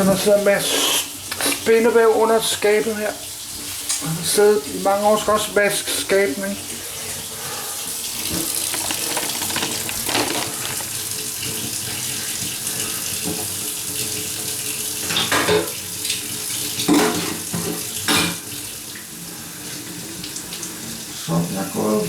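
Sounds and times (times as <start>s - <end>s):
tap water running into sink: 8.1s - 19.0s
water splashes or knocks: 8.3s - 11.1s.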